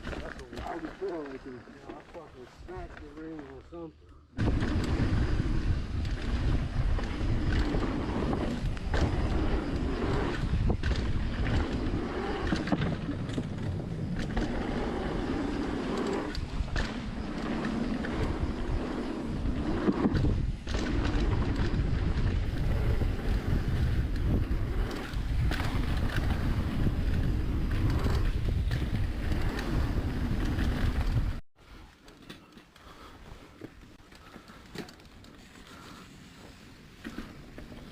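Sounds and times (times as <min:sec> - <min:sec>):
bike tyre rumble: 0:00.0 - 0:37.9
bike knocking and clattering: 0:04.4 - 0:18.4
wind buffeting microphone: 0:04.4 - 0:31.4.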